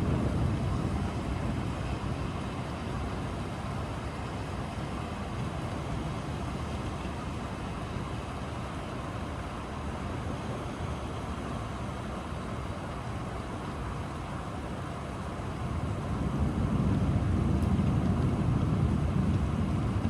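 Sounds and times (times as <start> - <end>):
low thunder rumble: 0.0 - 3.4, 15.5 - 20.0
steady rain: 0.0 - 20.0.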